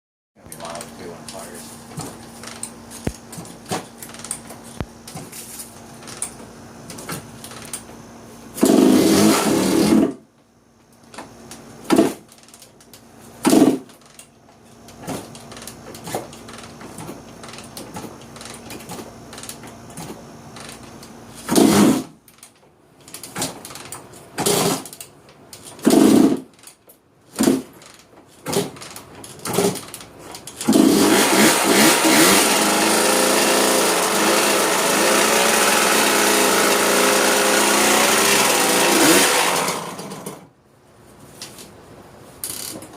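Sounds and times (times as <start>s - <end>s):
two-stroke engine firing in bursts: 8.6s - 10.2s, 13.4s - 13.9s, 21.4s - 22.2s, 25.8s - 26.5s, 30.6s - 40.5s.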